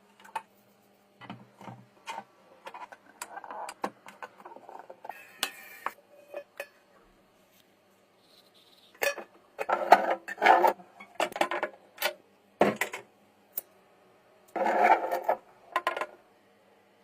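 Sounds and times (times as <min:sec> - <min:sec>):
hard objects scraping together: 0:14.5 - 0:16.1.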